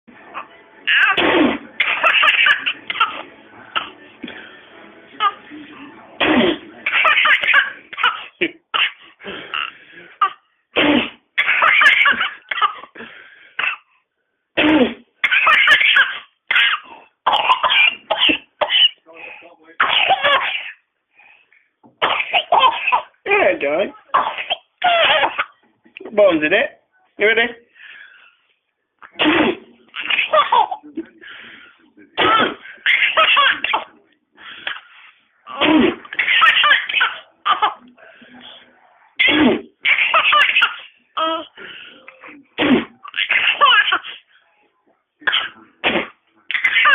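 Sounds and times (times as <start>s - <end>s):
baby coughing: 0.9s - 3.2s, 6.2s - 13.0s, 13.6s - 13.9s, 14.6s - 19.0s, 19.8s - 20.8s, 22.0s - 23.2s, 24.1s - 25.6s, 29.2s - 30.9s, 32.2s - 33.9s, 35.5s - 37.8s, 39.2s - 41.6s, 42.6s - 44.2s, 45.2s - 46.9s
baby girl laughing: 1.8s - 3.2s, 30.0s - 30.8s, 35.5s - 37.8s, 39.8s - 41.6s, 43.0s - 44.2s.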